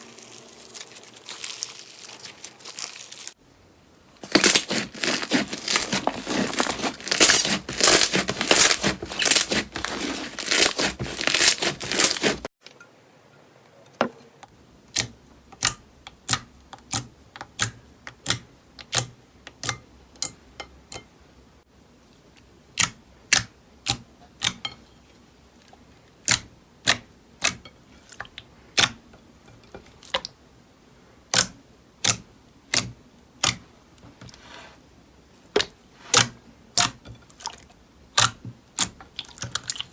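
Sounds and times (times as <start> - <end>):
slime crackling and crunching: 0.0 - 3.4, 4.2 - 12.5.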